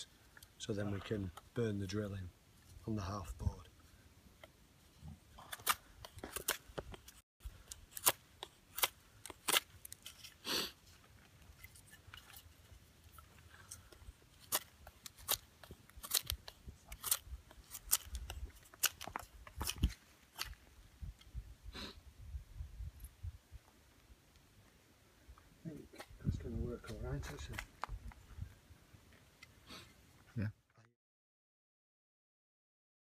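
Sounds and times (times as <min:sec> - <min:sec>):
knife scraping wood: 0:05.4 - 0:20.6.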